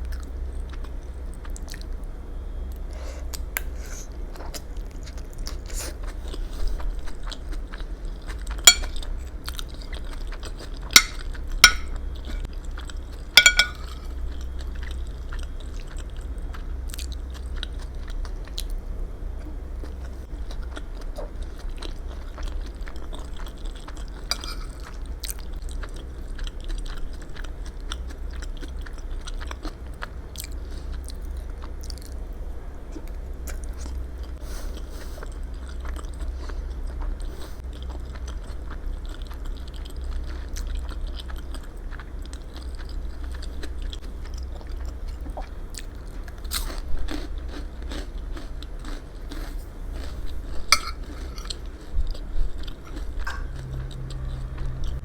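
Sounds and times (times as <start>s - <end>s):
steady low hum: 0.0s - 55.0s
person chewing: 2.8s - 18.8s, 19.4s - 32.3s, 32.9s - 55.0s
sharp ringing clinks: 13.4s - 13.9s.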